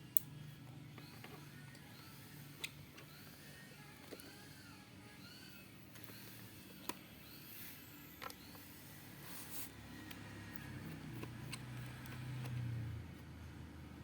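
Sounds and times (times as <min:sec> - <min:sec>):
faint squeaky chirps: 0:01.0 - 0:09.1.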